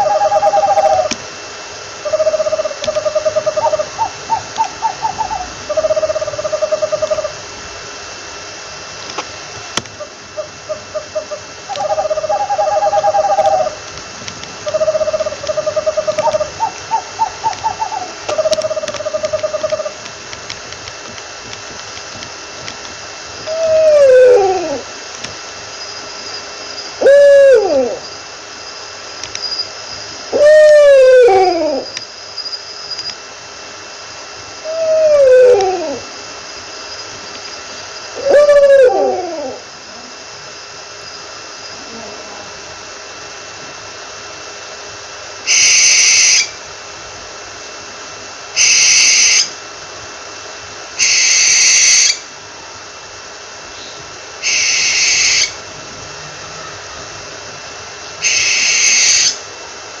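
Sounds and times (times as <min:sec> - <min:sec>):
owl calls rising and falling: 0:00.0 - 0:01.2, 0:02.0 - 0:07.5, 0:10.0 - 0:13.9, 0:14.6 - 0:20.1, 0:23.4 - 0:25.0, 0:26.8 - 0:28.2, 0:30.3 - 0:32.0, 0:34.6 - 0:36.2, 0:38.0 - 0:39.7, 0:45.5 - 0:46.6, 0:48.6 - 0:49.6, 0:51.0 - 0:52.2, 0:53.9 - 0:57.0, 0:58.2 - 0:59.4
owl screeching: 0:00.0 - 0:01.2, 0:02.0 - 0:07.4, 0:10.0 - 0:13.8, 0:14.6 - 0:20.0, 0:23.4 - 0:24.9, 0:26.8 - 0:28.2, 0:30.3 - 0:32.0, 0:34.6 - 0:36.1, 0:38.2 - 0:39.7, 0:45.5 - 0:46.6, 0:48.6 - 0:49.6, 0:51.0 - 0:52.2, 0:54.4 - 0:55.6, 0:58.2 - 0:59.4.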